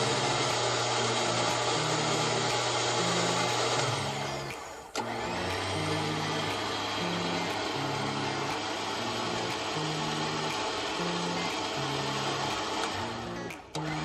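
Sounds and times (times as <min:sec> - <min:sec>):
electric winch motor running: 0:00.0 - 0:14.0.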